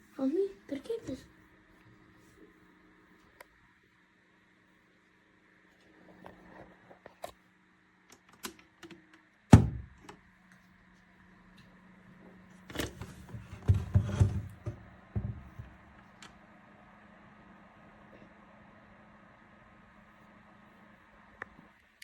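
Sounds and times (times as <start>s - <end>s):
faint low hum: 0.0s - 22.0s
heavy thump: 9.6s - 9.9s, 13.4s - 15.8s
knocks and rustling: 12.7s - 16.0s.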